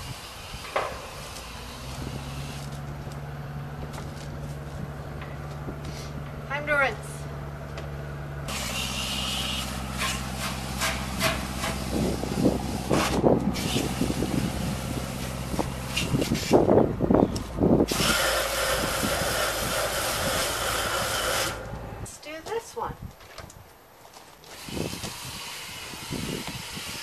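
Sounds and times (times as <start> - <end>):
hissing water spray: 0.0 - 2.8, 8.5 - 16.6, 17.9 - 21.8, 24.4 - 27.0.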